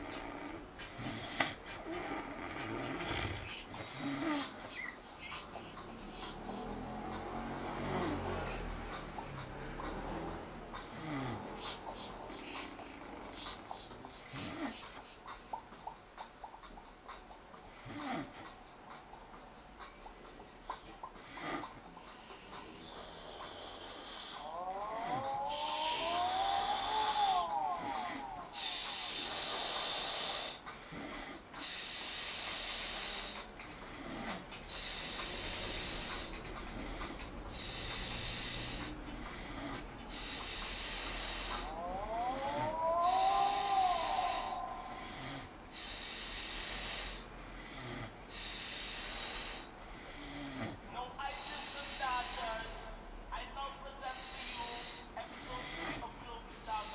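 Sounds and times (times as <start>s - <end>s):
man snoring: 0.0s - 4.5s, 6.3s - 9.1s, 9.7s - 14.8s, 17.8s - 18.4s, 21.2s - 21.8s, 22.7s - 53.0s, 53.9s - 56.9s.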